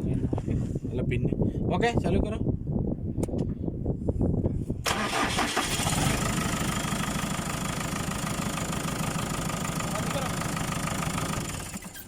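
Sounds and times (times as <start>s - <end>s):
diesel engine idling: 4.9s - 11.9s.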